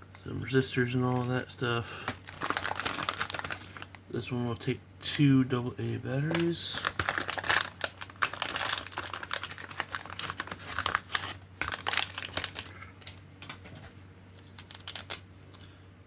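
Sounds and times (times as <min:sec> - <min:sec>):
plastic bags crinkling: 0:00.8 - 0:04.0, 0:06.2 - 0:13.8, 0:14.4 - 0:15.2.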